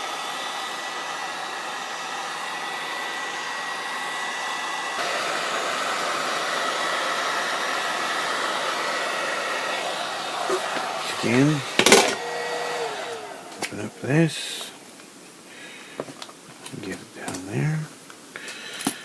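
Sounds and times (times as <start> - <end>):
heat gun blowing air with whine: 0.0 - 14.8.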